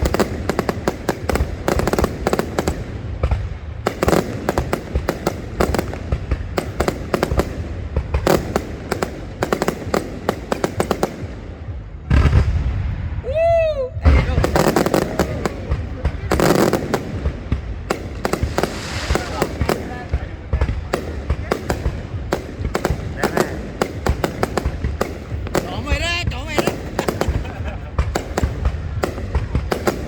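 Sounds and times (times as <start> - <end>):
fireworks boom: 0.0 - 30.0
fireworks crackling bangs: 0.0 - 30.0
low rumble: 17.0 - 23.8.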